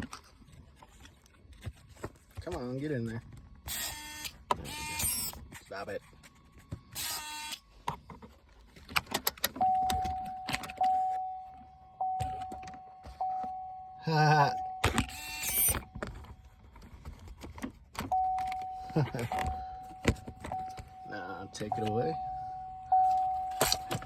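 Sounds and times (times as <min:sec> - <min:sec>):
electronic warning chime: 0:09.6 - 0:16.0, 0:18.1 - 0:24.0.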